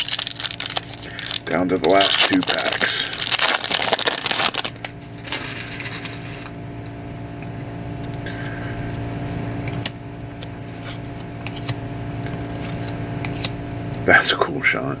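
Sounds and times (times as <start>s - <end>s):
cards clicking: 0.0s - 4.9s
foil pack crinkling: 0.0s - 6.6s
low mechanical hum: 0.0s - 15.0s.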